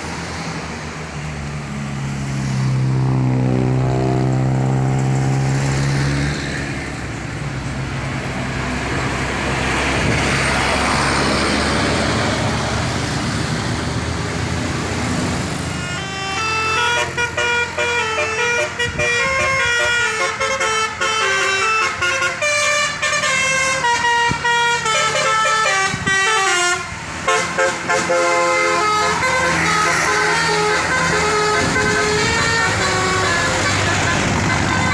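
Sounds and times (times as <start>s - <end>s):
bus engine and road noise: 0.0s - 34.9s
multi-tone bus horn tune: 15.5s - 34.9s.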